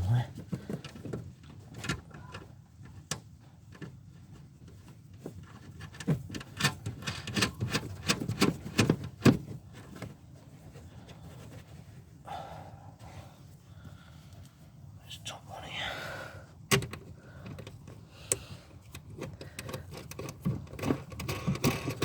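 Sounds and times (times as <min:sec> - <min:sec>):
hands working at car body parts: 0:00.3 - 0:12.2, 0:16.6 - 0:22.0.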